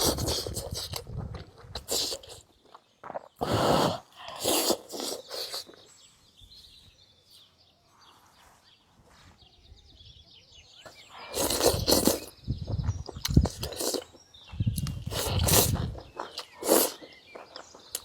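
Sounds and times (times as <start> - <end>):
biting and chewing: 0.0 - 5.9, 10.9 - 18.0
faint birds chirping: 0.0 - 18.0.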